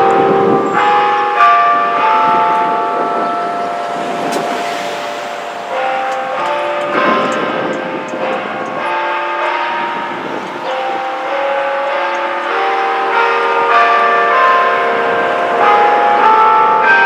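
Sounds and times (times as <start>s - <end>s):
tower bells ringing: 0.0s - 17.0s.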